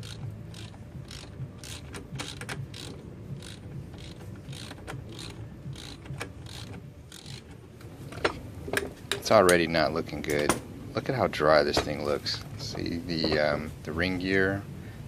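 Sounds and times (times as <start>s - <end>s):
ratchet wrench clicking: 0.0s - 9.7s.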